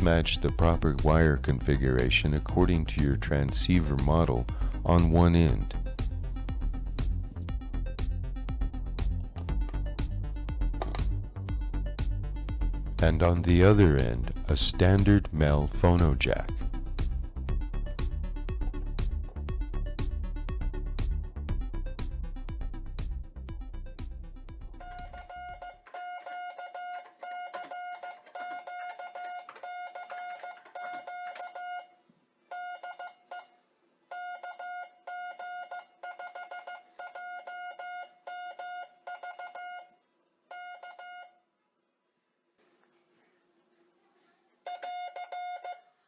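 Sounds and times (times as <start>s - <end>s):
morse code buzzy tone: 13.0s - 16.8s, 24.8s - 31.9s, 34.1s - 41.4s, 44.7s - 45.9s.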